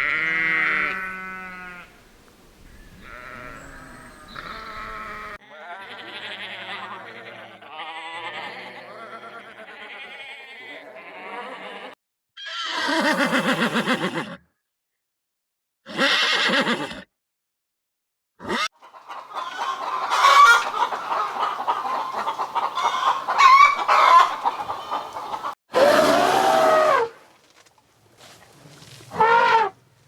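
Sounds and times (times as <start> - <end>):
quavering animal call: 2.7 - 13.7, 18.5 - 27.1, 29.0 - 29.8
rising and falling animal call: 18.5 - 27.1
chickens clucking: 18.7 - 25.6.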